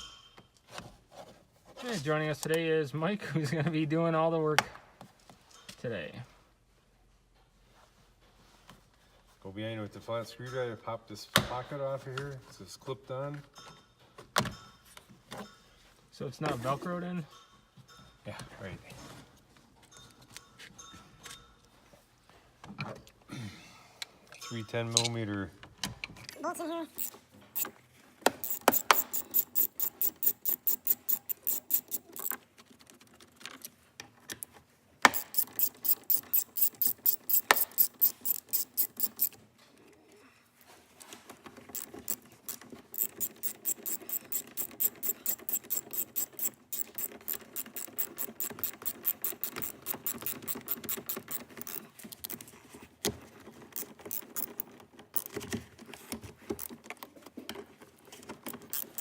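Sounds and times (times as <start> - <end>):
ratchet wrench clicking: 26.9 - 27.7, 28.3 - 32.4, 35.1 - 39.4, 41.7 - 52.4, 53.8 - 55.4, 58.4 - 59.0.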